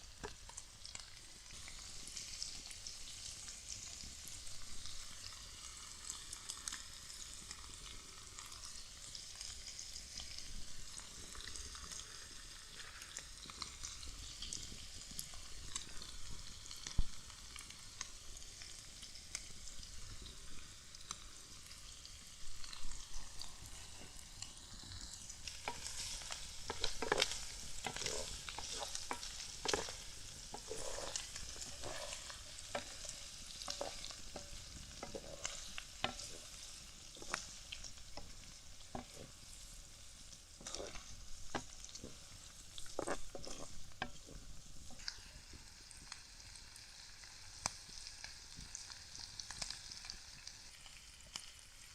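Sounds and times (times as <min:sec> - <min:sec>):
shrimp sizzling in butter: 0:00.0 - 0:51.9
utensil scraping against pot: 0:25.4 - 0:39.6, 0:40.6 - 0:45.2.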